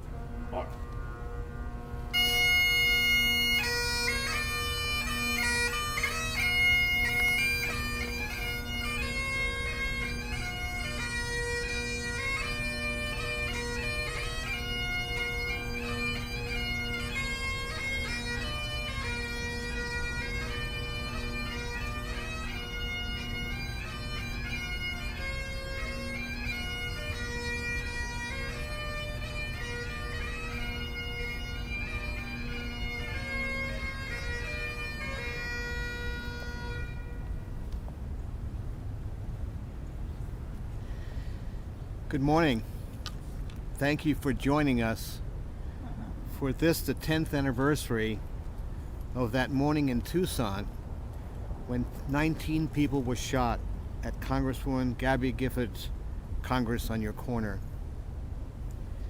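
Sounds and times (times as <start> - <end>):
bagpipes playing a melody: 0.0 - 37.8, 40.6 - 57.6.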